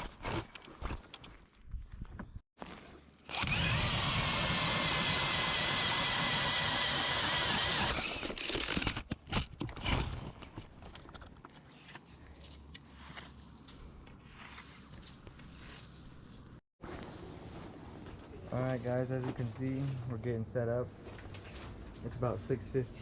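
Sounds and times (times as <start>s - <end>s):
ice auger motor whine: 3.3s - 8.9s.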